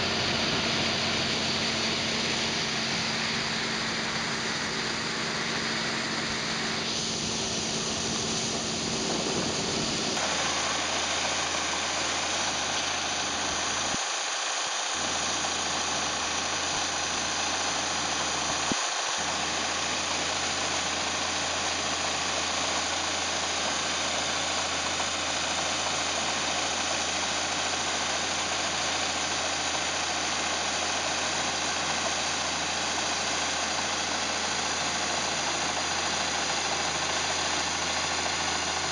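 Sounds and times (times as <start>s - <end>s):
steady low hum: 0.0s - 14.1s
combine harvester running: 0.0s - 38.9s.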